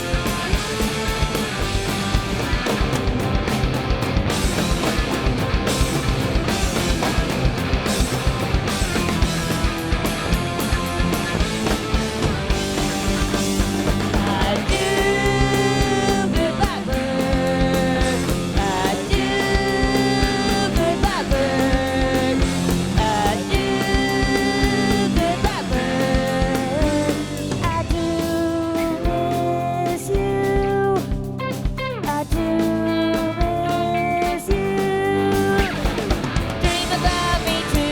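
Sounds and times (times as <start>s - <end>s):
drum kit pounding: 0.0s - 37.9s
electric guitars: 0.0s - 37.9s.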